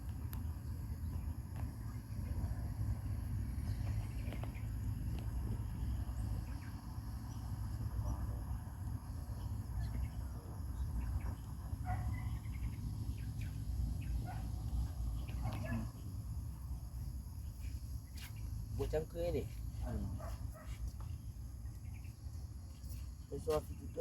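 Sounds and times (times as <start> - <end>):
steady low rumble: 0.0 - 20.2
insect chirps: 0.0 - 24.0
bird chirps: 9.3 - 16.2.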